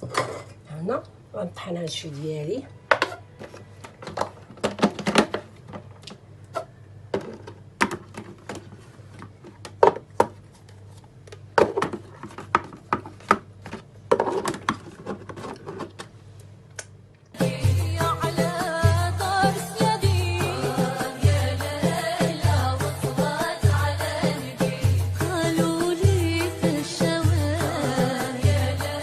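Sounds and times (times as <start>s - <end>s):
music: 17.4s - 29.0s.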